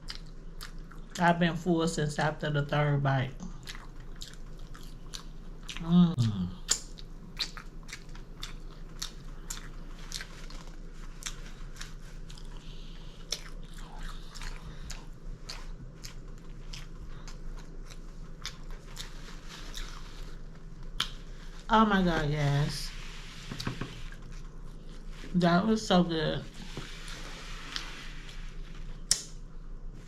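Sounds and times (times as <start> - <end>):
person chewing crunchy food: 0.0 - 1.2, 3.4 - 21.6.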